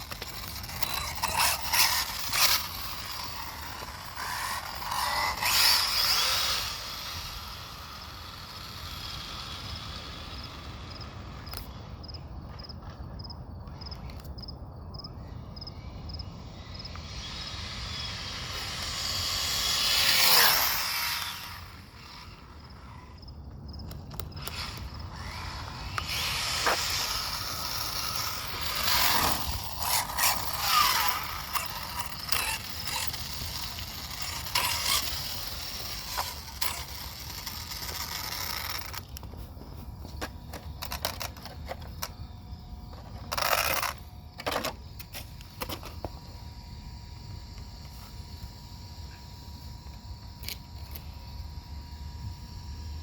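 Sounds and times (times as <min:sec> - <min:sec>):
rc car clicking: 0:00.0 - 0:11.8, 0:16.5 - 0:23.2, 0:23.8 - 0:39.4, 0:40.1 - 0:42.2, 0:42.9 - 0:46.2, 0:49.8 - 0:51.1
rc car tyre and drivetrain noise: 0:00.0 - 0:14.4, 0:15.1 - 0:53.0.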